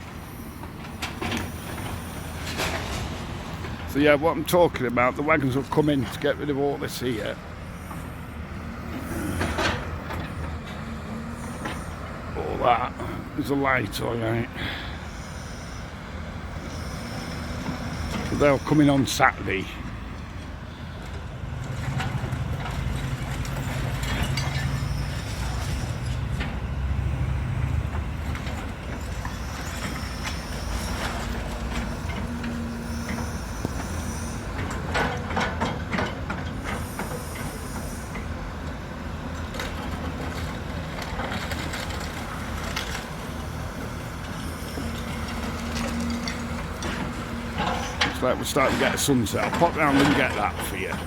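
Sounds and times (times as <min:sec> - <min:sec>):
heavy vehicle engine rumbling: 0:00.0 - 0:51.0
traffic noise: 0:00.0 - 0:51.0
high-pitched squeals: 0:07.0 - 0:19.9, 0:29.0 - 0:34.7.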